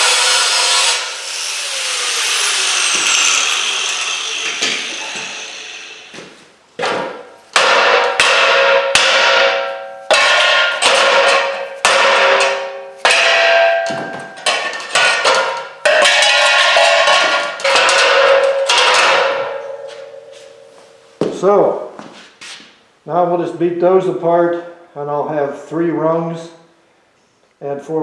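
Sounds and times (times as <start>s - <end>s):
hammer striking aluminum ladder: 2.0s - 21.0s.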